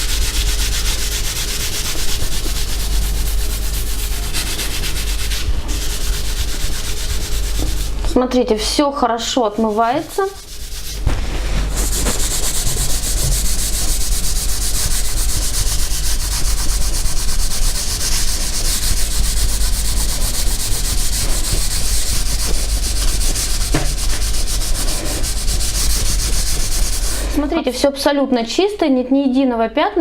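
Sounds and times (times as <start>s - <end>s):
cloth scrubbing ceramic tiles: 9.2s - 27.5s.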